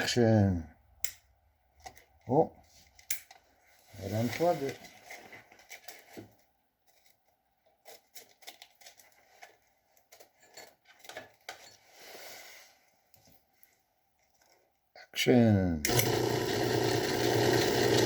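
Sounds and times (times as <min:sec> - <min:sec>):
soft rustle: 0:02.6 - 0:07.2, 0:11.7 - 0:14.7
metal parts and tools clinking: 0:10.1 - 0:11.8.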